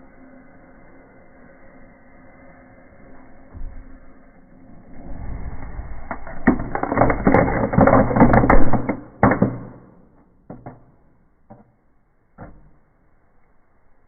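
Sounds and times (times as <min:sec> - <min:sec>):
firework crackling and popping: 0:05.5 - 0:11.6.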